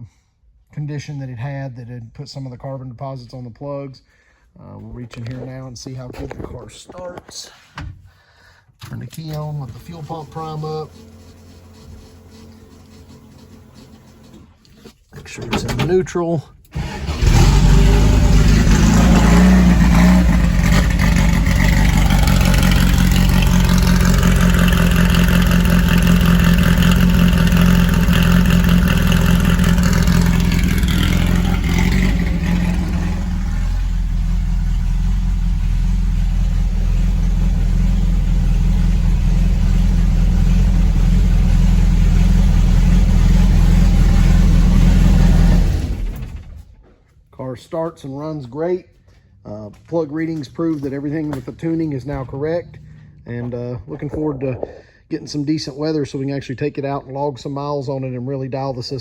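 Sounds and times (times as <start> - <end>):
man talking: 0.7 - 7.7, 8.8 - 11.0, 15.1 - 16.6, 47.4 - 59.0
car engine idling: 16.8 - 46.7.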